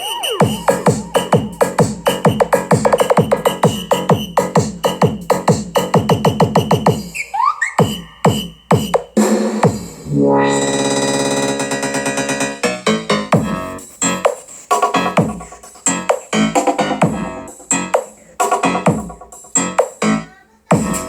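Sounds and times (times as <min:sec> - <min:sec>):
electronic music on small speaker: 0:00.0 - 0:21.0
rising synth sweeps: 0:09.9 - 0:13.1
held synth chord: 0:10.0 - 0:13.8.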